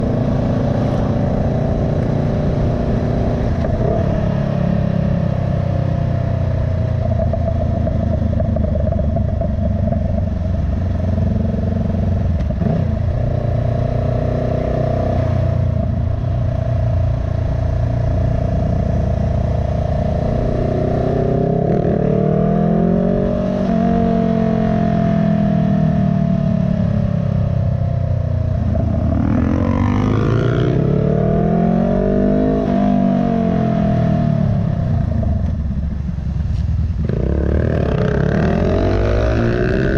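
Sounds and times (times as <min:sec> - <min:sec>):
vehicle engine droning: 0:00.0 - 0:39.9
exhaust pops and crackles: 0:06.9 - 0:10.8.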